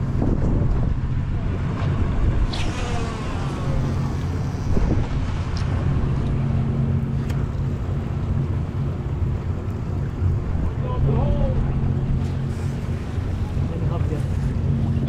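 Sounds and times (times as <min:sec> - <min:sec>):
boat engines droning: 0:00.0 - 0:15.0
wind buffeting microphone: 0:00.0 - 0:15.0.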